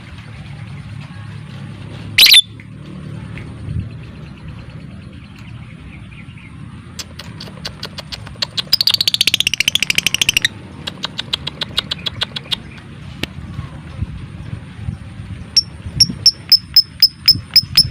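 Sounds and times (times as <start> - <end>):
lovebird ticking clicks: 7.0 - 13.3.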